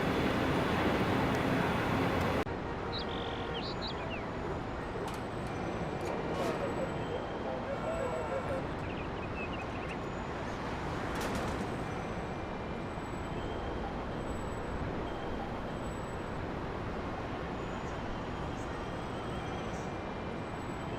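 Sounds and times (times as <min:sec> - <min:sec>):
passenger train rumbling: 0:00.0 - 0:08.9.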